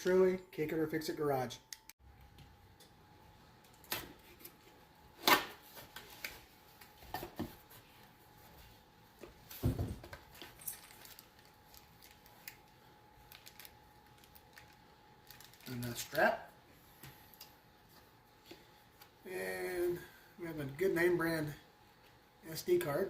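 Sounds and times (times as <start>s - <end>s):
packaging rustling: 10.2s - 16.2s.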